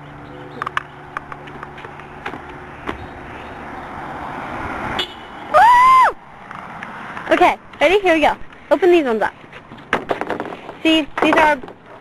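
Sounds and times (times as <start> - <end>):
car passing on road: 0.0 - 8.8.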